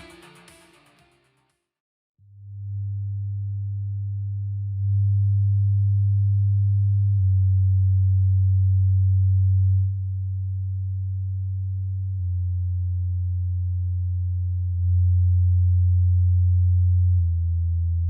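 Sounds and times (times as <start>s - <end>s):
low bass test tone: 2.4s - 18.0s.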